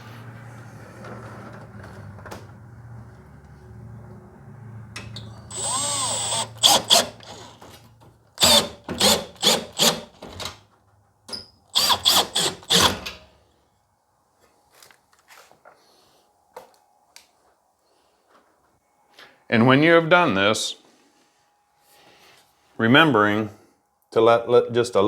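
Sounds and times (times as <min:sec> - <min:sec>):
cordless drill running: 0:05.5 - 0:07.7, 0:08.4 - 0:10.4, 0:11.7 - 0:13.0.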